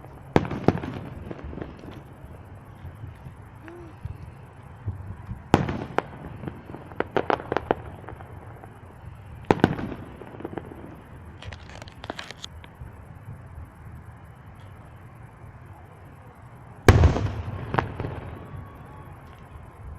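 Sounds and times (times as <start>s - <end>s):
fireworks bangs: 0.0s - 13.4s, 16.8s - 19.9s
fireworks quick pops: 11.4s - 12.8s.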